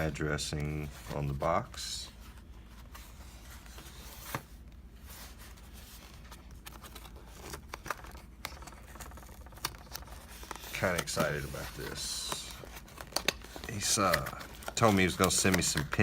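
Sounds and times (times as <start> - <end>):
cardboard box rustling: 0.5 - 16.0.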